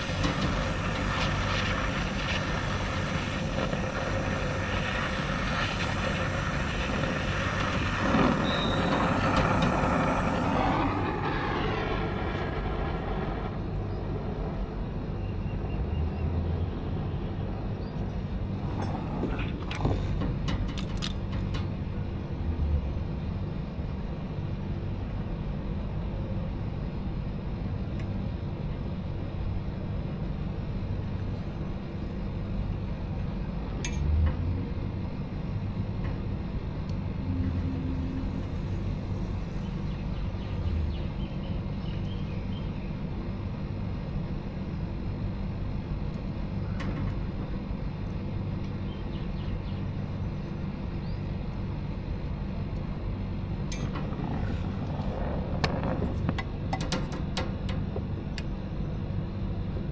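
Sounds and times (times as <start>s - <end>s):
motor humming: 0.0s - 15.0s.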